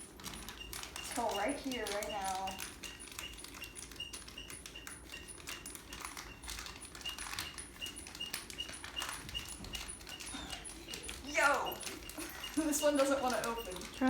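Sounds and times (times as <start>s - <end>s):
squeaking ceiling fan: 0.0s - 14.0s.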